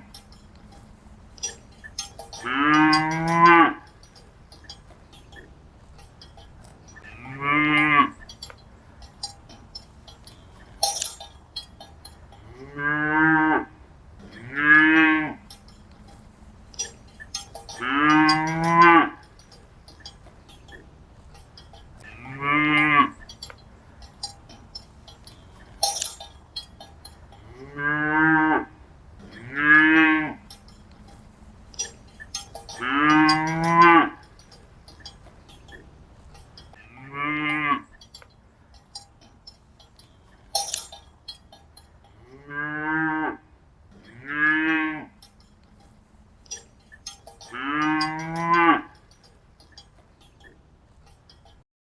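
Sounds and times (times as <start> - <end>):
short clinks: 0.0 - 42.4, 43.8 - 51.6
cattle mooing: 1.4 - 3.9, 7.0 - 8.3, 12.3 - 15.6, 16.8 - 19.3, 22.0 - 23.3, 27.3 - 34.3, 36.8 - 38.0, 42.1 - 45.4, 46.5 - 49.0.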